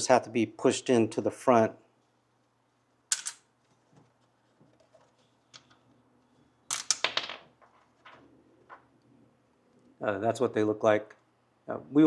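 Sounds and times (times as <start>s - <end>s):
plastic clicks and clattering: 4.7s - 5.8s.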